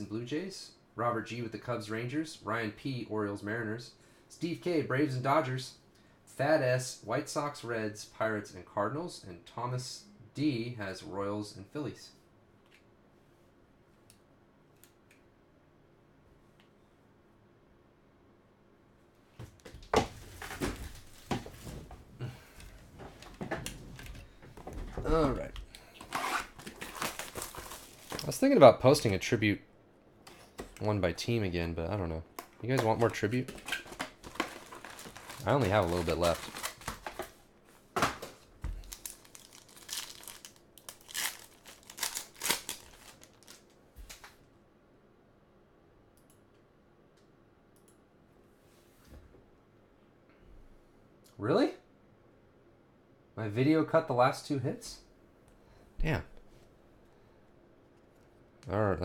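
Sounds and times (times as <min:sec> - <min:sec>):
packaging rustling: 0:25.9 - 0:29.0, 0:32.3 - 0:37.4, 0:38.0 - 0:44.4.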